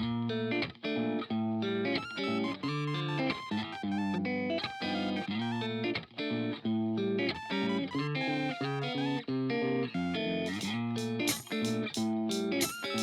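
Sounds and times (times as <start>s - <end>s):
background music with steady beat: 10.3s - 13.0s.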